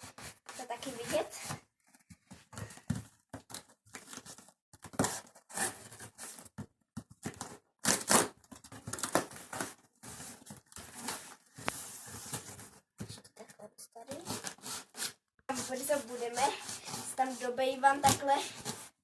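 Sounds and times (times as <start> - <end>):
knife cutting cardboard: 4.8 - 6.5, 7.2 - 12.6, 14.1 - 19.0
cardboard ripping: 7.3 - 12.6.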